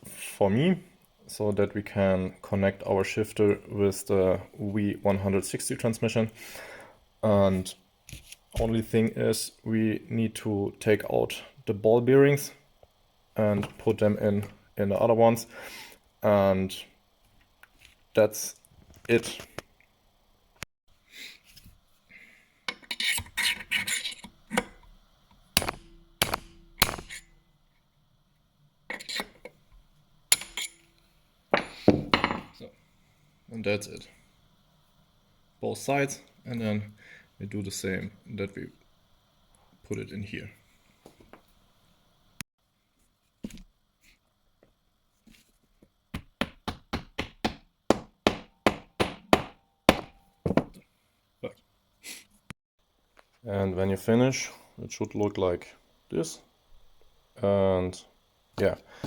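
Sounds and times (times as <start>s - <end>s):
hammer taps: 25.6s - 27.2s.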